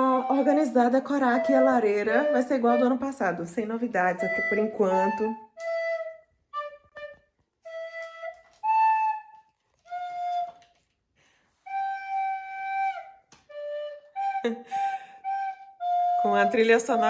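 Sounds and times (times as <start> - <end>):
child playing flute: 0.0 - 10.8, 11.6 - 17.0.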